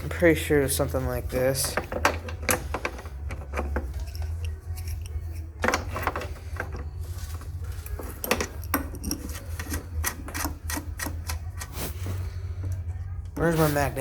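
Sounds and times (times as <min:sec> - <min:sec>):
steady low hum: 0:00.0 - 0:14.0
metal tools clinking: 0:01.2 - 0:11.7.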